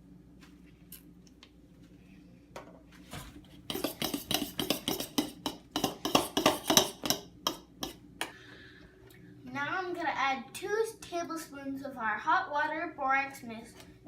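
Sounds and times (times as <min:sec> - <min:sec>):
utensil knocking and scraping bucket: 0:03.2 - 0:07.2.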